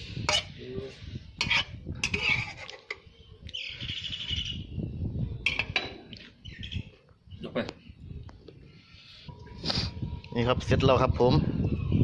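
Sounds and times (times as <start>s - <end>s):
bird chirping: 3.0s - 5.0s, 6.3s - 8.0s.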